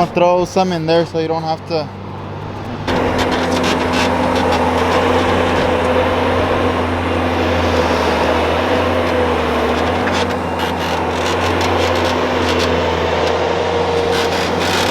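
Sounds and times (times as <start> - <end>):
engine running loud: 0.0 - 14.9
sharp clicks or scrapes: 2.9 - 6.0.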